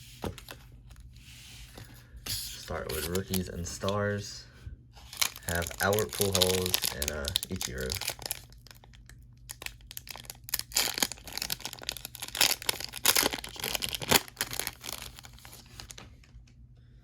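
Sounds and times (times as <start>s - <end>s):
wrapper being torn and crinkled: 2.8s - 3.5s, 5.1s - 16.0s.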